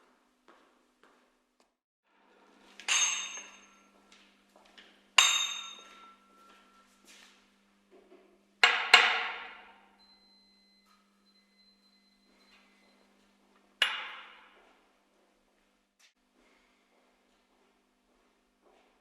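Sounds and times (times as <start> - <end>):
sharp ringing impacts: 2.9 - 4.0, 5.2 - 7.1.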